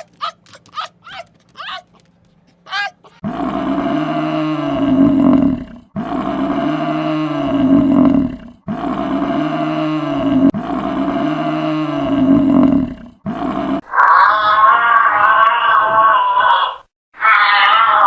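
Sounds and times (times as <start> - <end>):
large animal roaring: 3.2 - 18.0.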